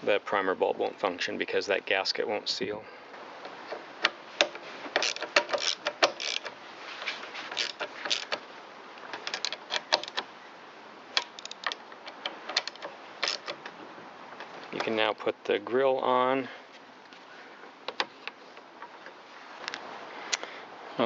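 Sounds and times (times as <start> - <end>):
engine parts clicking and knocking: 3.4 - 6.6.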